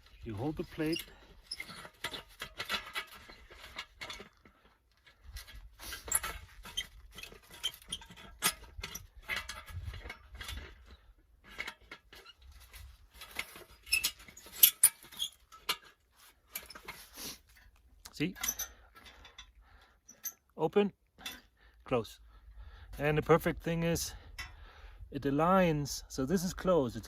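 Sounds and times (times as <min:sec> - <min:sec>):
small metal parts clicking and scraping: 0:00.2 - 0:20.5.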